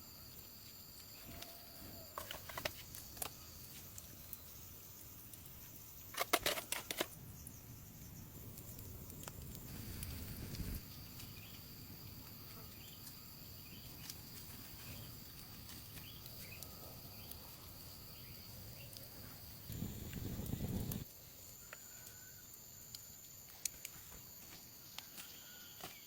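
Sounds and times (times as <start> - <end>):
high-pitched insect trill: 0.0 - 26.0
faint chirps: 10.0 - 26.0.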